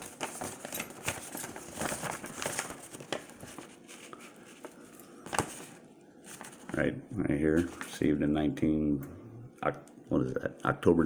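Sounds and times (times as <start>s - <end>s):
paper rustling and crinkling: 0.0s - 6.8s, 7.6s - 8.0s.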